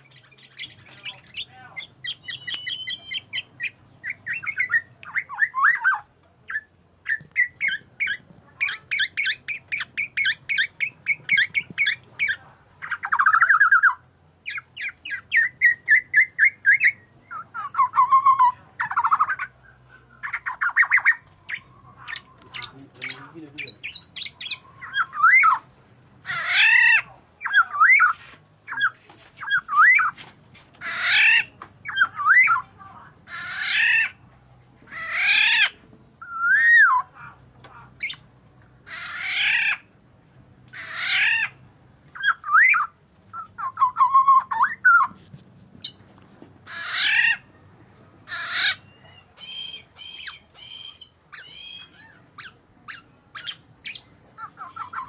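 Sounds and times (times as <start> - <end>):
bird harsh calls: 0.0 - 30.2, 30.8 - 34.2, 34.9 - 39.9, 40.7 - 41.6, 42.2 - 45.2, 46.6 - 47.6, 48.2 - 55.0
bird whistled gliding notes: 2.1 - 3.5.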